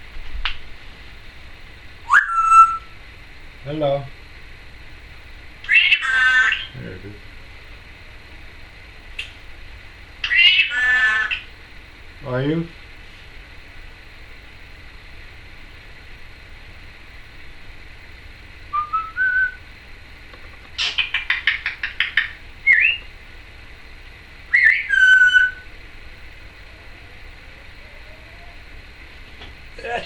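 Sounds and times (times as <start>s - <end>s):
parrot whistling: 2.0s - 3.0s, 5.6s - 6.7s, 10.2s - 11.5s, 18.7s - 19.6s, 20.8s - 23.1s, 24.5s - 25.7s
parrot clicks: 20.3s - 22.4s.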